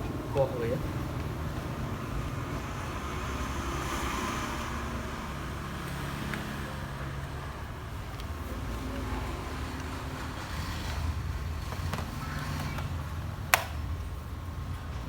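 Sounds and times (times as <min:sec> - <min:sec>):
low background rumble and hiss: 0:00.0 - 0:03.7.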